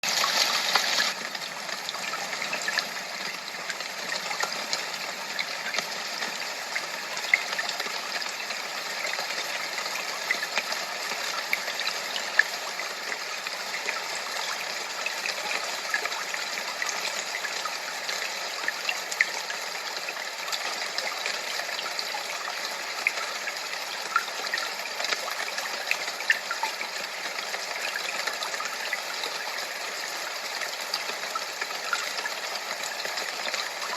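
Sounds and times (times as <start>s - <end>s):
rushing hiss of water: 0.0s - 8.2s
faint ticks and splashes: 0.2s - 33.9s.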